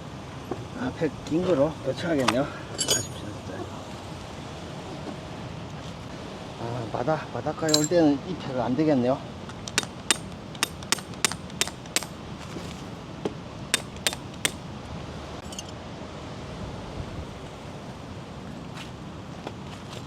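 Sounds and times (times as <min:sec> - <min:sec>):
metal tent pegs clinking: 0:02.1 - 0:03.4, 0:07.7 - 0:08.0, 0:09.5 - 0:12.2, 0:13.7 - 0:14.6, 0:15.4 - 0:15.8.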